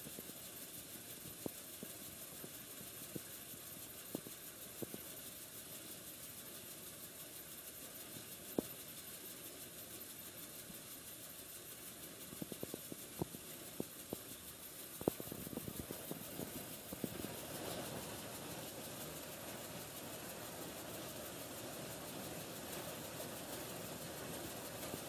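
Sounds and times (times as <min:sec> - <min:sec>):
engine running: 0:12.4 - 0:25.0.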